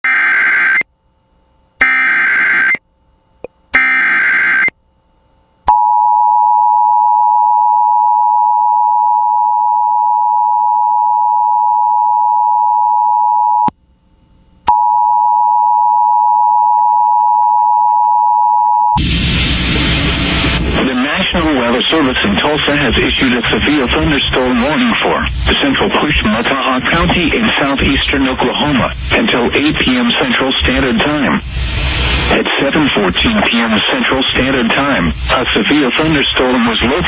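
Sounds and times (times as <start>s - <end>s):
noisy broadcast audio: 0.0s - 5.7s, 16.6s - 37.0s
warbling digital data bursts: 19.0s - 37.0s.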